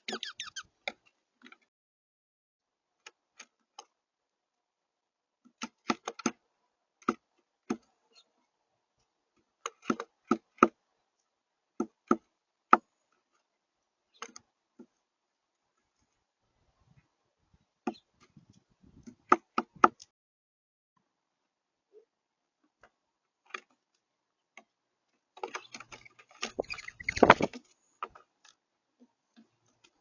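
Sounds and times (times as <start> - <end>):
birds pecking at a feeder: 7.0 - 16.2, 22.6 - 30.0.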